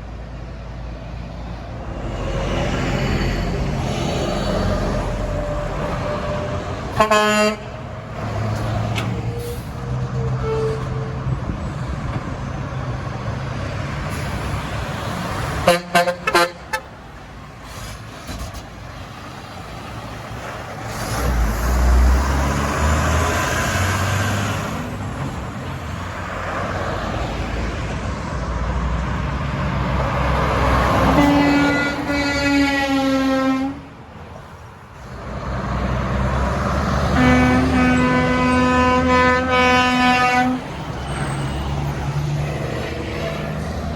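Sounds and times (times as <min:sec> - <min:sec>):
heavy truck passing: 0:00.0 - 0:43.9
steady traffic noise: 0:00.0 - 0:43.9
truck air horn blasts: 0:05.1 - 0:07.8, 0:09.3 - 0:11.3, 0:15.6 - 0:16.9, 0:31.0 - 0:33.9, 0:37.1 - 0:40.7.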